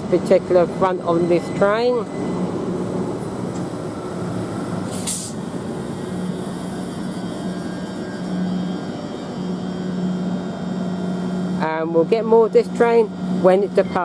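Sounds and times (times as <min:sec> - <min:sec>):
train equipment humming: 0:00.0 - 0:14.0
air brake hiss: 0:04.9 - 0:05.4.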